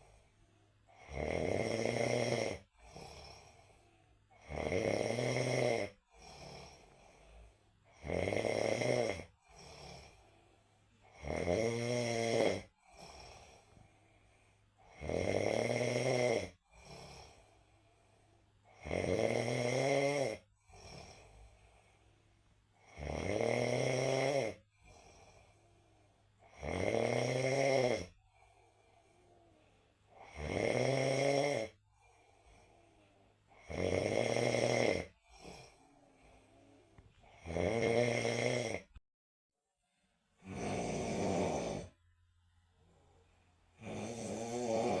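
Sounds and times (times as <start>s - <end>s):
soft breathing: 0.0s - 1.2s, 2.6s - 4.5s, 6.0s - 8.0s, 9.3s - 11.2s, 12.6s - 15.0s, 16.5s - 18.8s, 20.4s - 22.9s, 24.6s - 26.5s, 28.1s - 30.3s, 31.7s - 33.7s, 35.1s - 37.4s, 39.8s - 45.0s
person snoring loudly: 0.9s - 7.3s, 7.9s - 10.3s, 11.0s - 13.8s, 14.8s - 17.5s, 18.7s - 21.6s, 22.8s - 25.6s, 26.4s - 29.2s, 30.1s - 32.7s, 33.5s - 36.6s, 37.2s - 39.0s, 40.4s - 42.0s, 43.7s - 45.0s.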